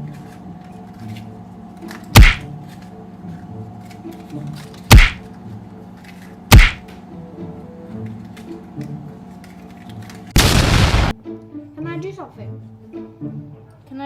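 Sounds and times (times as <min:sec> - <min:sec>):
quiet background music: 0:00.0 - 0:14.0
loud short thumps: 0:02.2 - 0:02.5, 0:04.9 - 0:05.2, 0:06.5 - 0:06.8.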